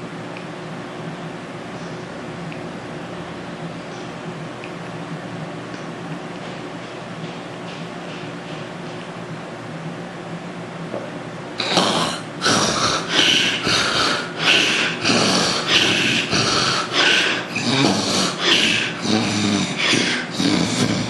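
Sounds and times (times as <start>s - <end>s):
man snoring and snorting: 11.6s - 21.0s.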